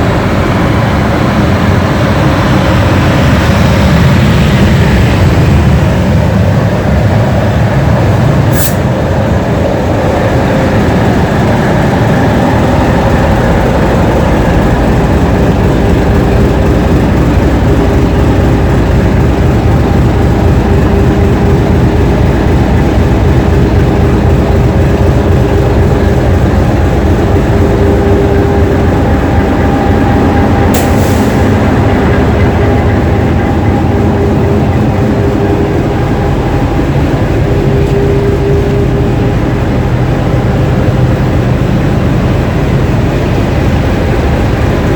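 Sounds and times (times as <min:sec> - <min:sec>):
diesel locomotive engine running: 0:00.0 - 0:44.9.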